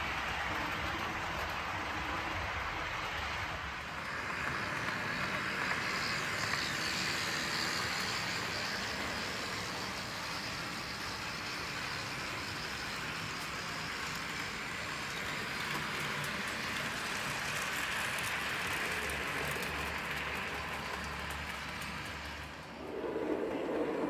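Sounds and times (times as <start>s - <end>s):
model train running on track: 0.0s - 24.0s.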